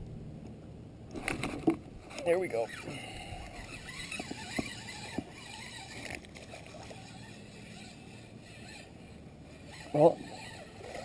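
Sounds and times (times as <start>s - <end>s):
faint wind: 0.0s - 11.0s
fishing reel cranking: 2.5s - 11.0s
water noise: 2.5s - 11.0s.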